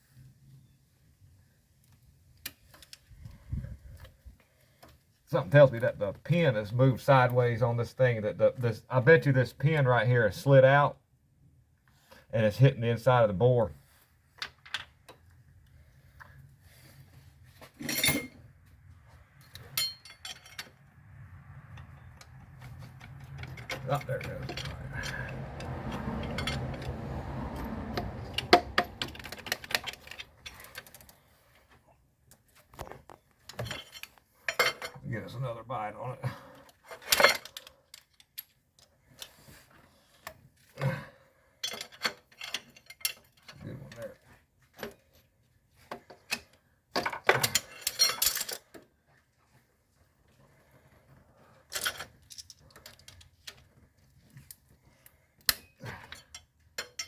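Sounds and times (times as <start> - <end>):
metal tools clinking: 17.8 - 18.4, 19.5 - 20.8, 21.8 - 26.9, 33.5 - 35.0, 36.7 - 38.6, 41.6 - 43.6, 46.2 - 48.8, 51.7 - 53.7, 55.4 - 57.0.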